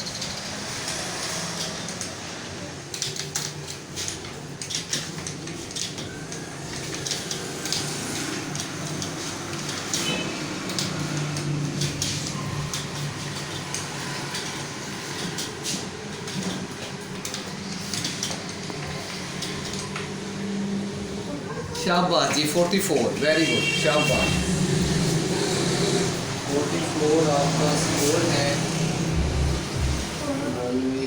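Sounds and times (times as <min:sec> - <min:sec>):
fast keyboard typing: 0:00.0 - 0:30.5.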